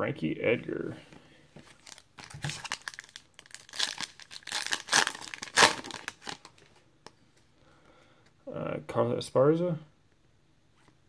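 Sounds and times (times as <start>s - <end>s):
wrapper tearing and crinkling: 1.8s - 6.7s.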